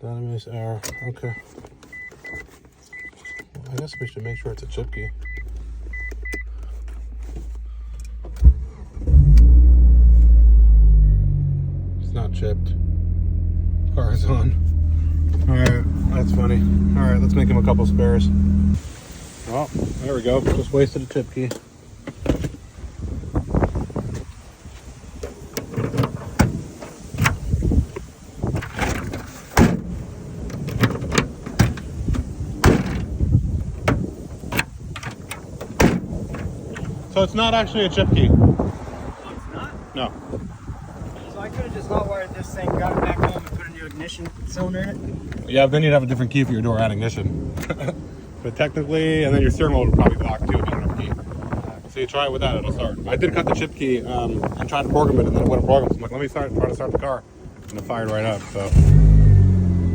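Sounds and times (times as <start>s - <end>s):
car engine cranking and running: 3.0s - 19.0s, 57.7s - 59.9s
low rumble: 5.0s - 19.0s
sharp knocks and clunks: 28.6s - 29.9s, 30.5s - 33.1s, 33.8s - 36.9s.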